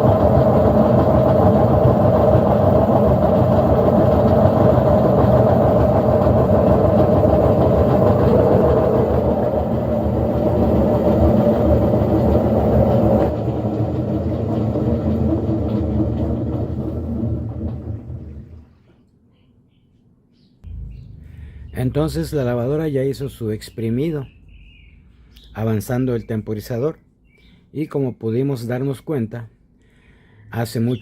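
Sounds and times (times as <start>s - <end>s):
washing machine spinning: 0.0s - 19.0s.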